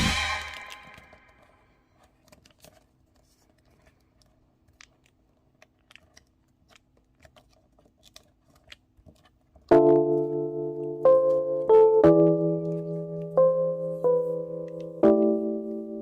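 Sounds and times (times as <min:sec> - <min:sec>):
music: 0:00.0 - 0:01.3, 0:09.7 - 0:16.0
paper rustling and creasing: 0:00.5 - 0:09.7.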